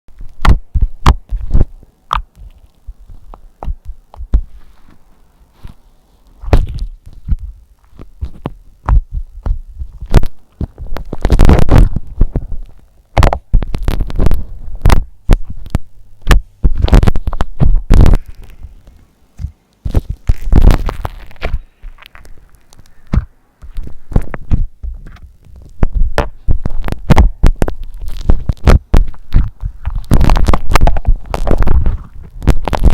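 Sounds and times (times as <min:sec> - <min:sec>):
slime squelching: 0:00.2 - 0:32.9.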